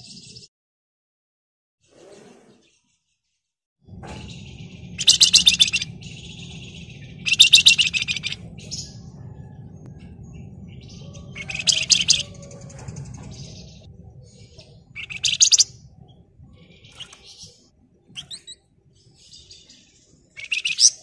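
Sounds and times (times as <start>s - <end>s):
low background rumble: 3.8s - 21.0s
bird chirps: 3.9s - 21.0s
songbird rattling trills: 4.0s - 13.9s, 14.5s - 17.6s, 18.2s - 18.6s, 20.3s - 21.0s.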